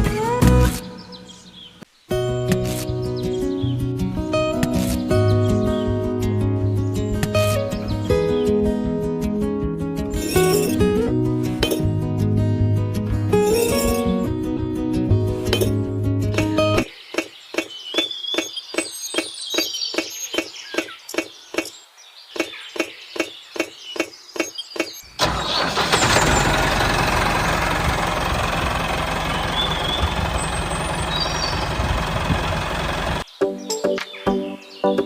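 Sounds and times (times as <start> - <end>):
faint bird chirps: 16.9 - 25.1, 29.2 - 31.9.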